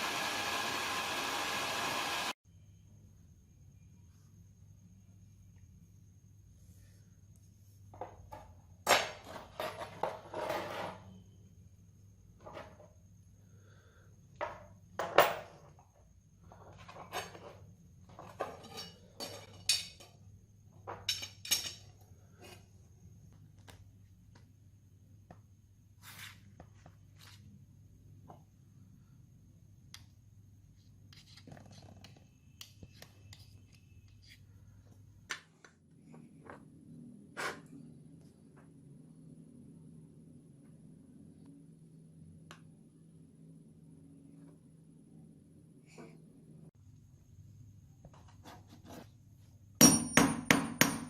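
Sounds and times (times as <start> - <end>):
faint steady hum: 32.1 - 49.6.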